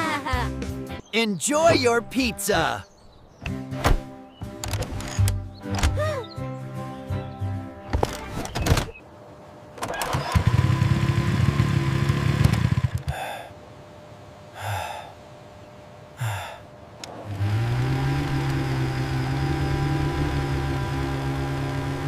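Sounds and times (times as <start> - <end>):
scooter engine humming: 10.2 - 13.0, 17.3 - 22.0.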